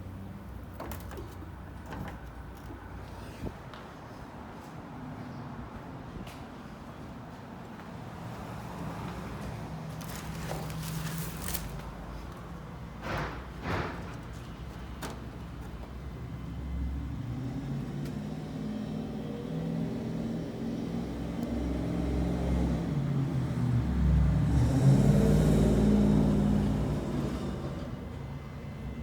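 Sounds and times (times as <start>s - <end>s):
car driving past: 16.4s - 28.0s.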